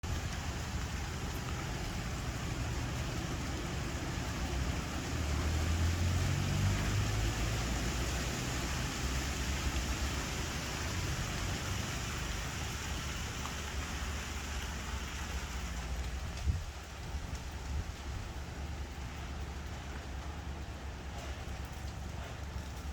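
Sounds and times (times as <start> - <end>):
freezing rain hiss: 0.0 - 22.9
gusty wind through trees: 0.0 - 22.9
wind rumble on microphone: 15.8 - 19.2.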